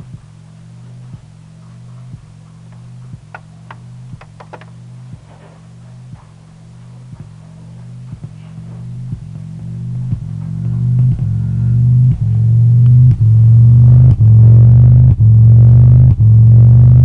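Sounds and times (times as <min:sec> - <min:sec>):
steady low drone: 0:00.0 - 0:17.0.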